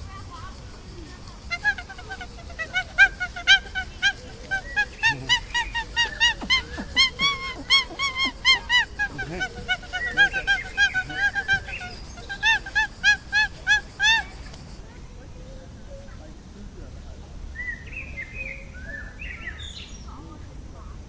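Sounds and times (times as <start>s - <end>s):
birds honking: 1.4s - 14.4s.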